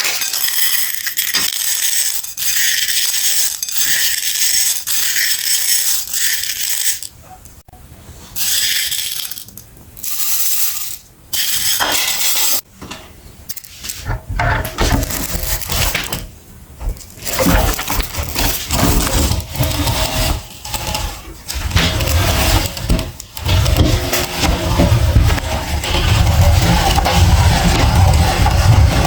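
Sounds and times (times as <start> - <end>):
meat grinder grinding: 17.2 - 29.0.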